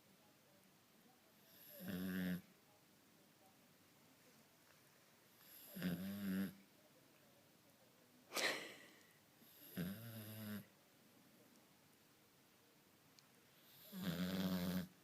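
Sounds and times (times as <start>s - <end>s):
drawn-out pitched snores: 1.5s - 2.4s, 5.4s - 6.6s, 9.5s - 10.7s, 13.6s - 15.0s.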